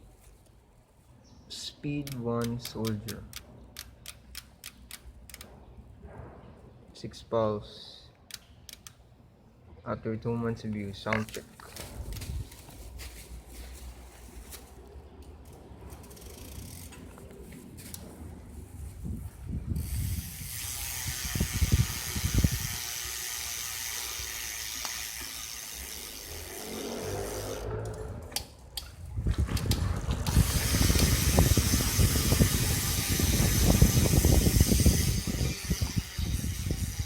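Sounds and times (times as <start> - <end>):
bicycle hub ratcheting buzz: 16.0 - 17.0, 19.7 - 28.5, 29.5 - 37.0.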